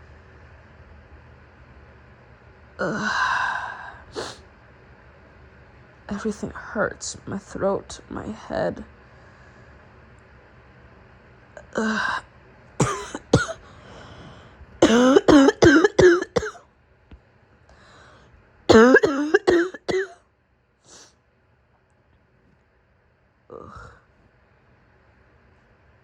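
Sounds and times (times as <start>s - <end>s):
woman coughing: 12.8s - 13.6s, 14.8s - 16.6s, 18.7s - 20.2s.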